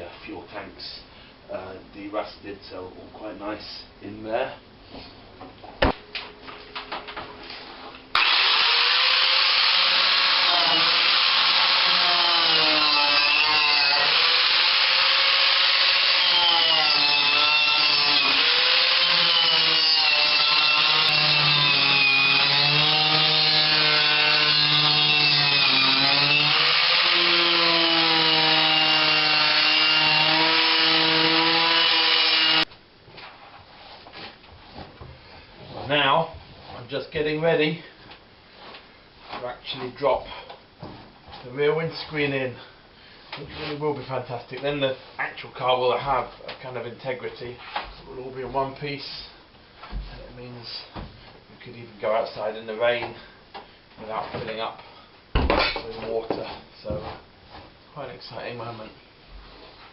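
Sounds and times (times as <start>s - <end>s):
power tool whining on metal: 8.1s - 32.7s.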